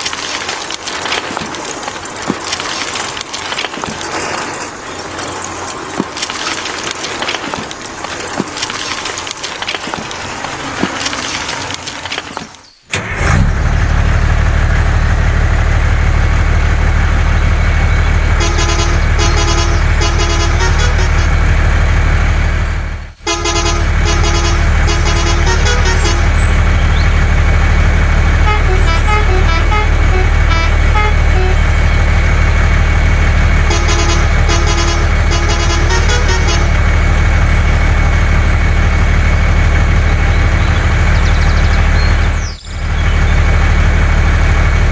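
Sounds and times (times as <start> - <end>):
truck engine humming: 0.0 - 44.9
multi-tone truck horn: 14.3 - 44.9.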